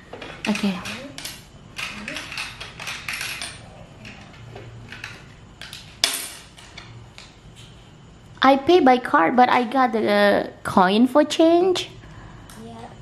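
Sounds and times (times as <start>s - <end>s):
plastic toy clicks and clatter: 0.4s - 4.2s.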